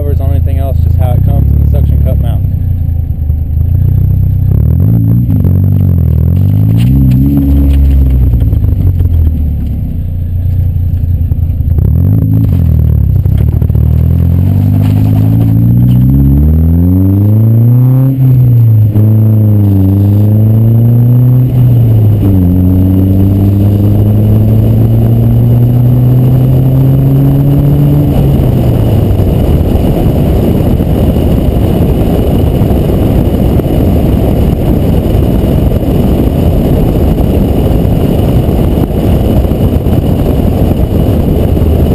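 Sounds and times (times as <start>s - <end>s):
car engine accelerating: 0.0s - 41.9s
wind buffeting camera: 10.6s - 41.9s.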